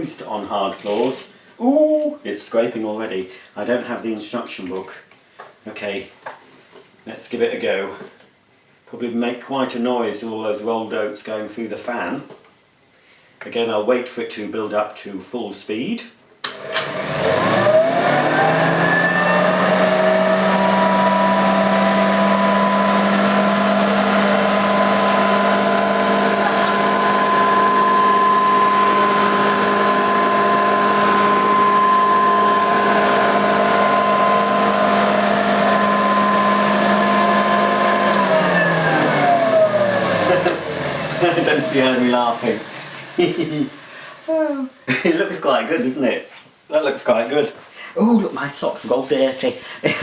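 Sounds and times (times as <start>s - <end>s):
vacuum cleaner motor whining: 16.4s - 44.6s
debris going through vacuum fan: 16.5s - 44.6s.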